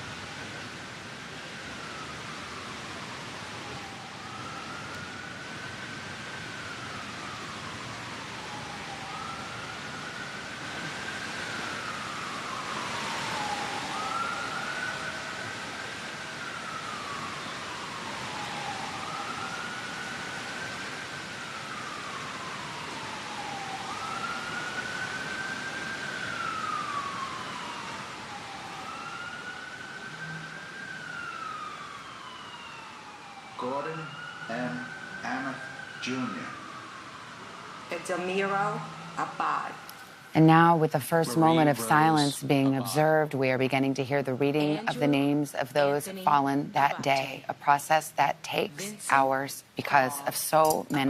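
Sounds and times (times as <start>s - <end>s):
siren wailing: 0.0s - 47.2s
background hiss: 34.0s - 43.5s.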